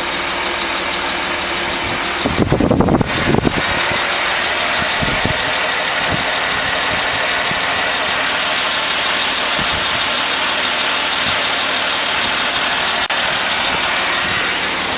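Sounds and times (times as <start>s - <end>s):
car engine running: 0.0s - 14.9s
air suspension raising: 1.2s - 8.4s, 9.0s - 13.0s.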